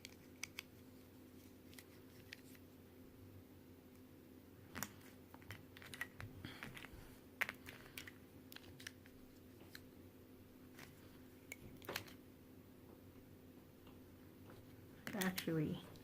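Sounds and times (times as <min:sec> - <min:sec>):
plastic puzzle pieces clicking: 0:15.0 - 0:15.5.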